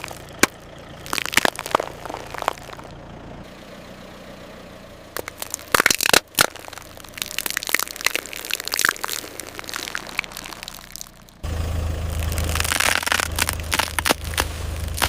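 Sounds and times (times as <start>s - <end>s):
objects crunching under tyre: 0.0s - 3.5s, 5.2s - 15.0s
car engine idling: 0.0s - 15.0s.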